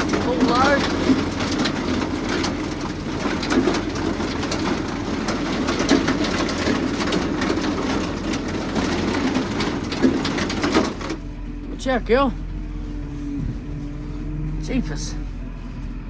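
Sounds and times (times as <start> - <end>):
dense crackle of small hits: 0.0 - 11.4
tractor and chopper running: 0.0 - 16.0.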